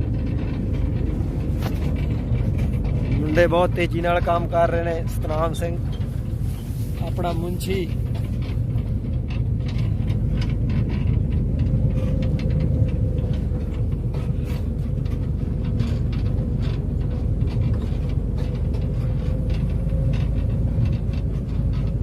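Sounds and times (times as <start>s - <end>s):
faint machine whine: 0.0s - 22.0s
farm machine engine rumble: 0.0s - 22.0s.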